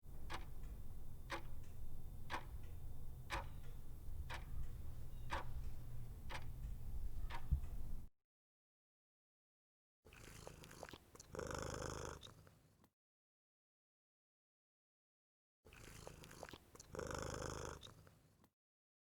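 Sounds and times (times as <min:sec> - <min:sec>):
low steady hum: 0:00.0 - 0:08.1
clock ticking: 0:00.1 - 0:08.1.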